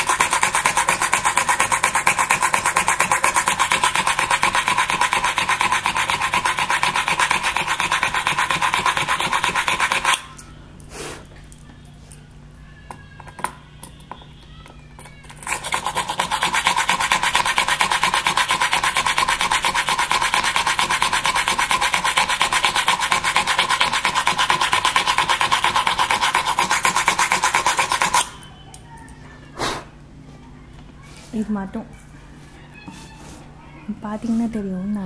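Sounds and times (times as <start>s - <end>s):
hand drill grinding into board: 0.0s - 10.2s.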